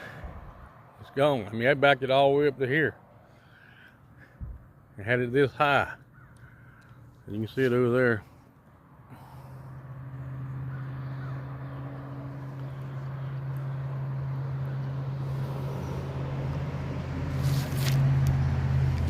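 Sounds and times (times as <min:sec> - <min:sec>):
low engine hum: 0:08.2 - 0:19.0.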